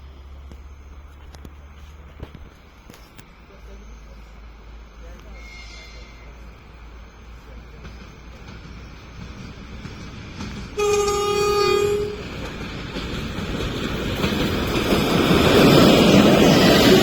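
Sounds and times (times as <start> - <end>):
freight train rumble: 0.0 - 17.0
locomotive horn: 10.8 - 12.4.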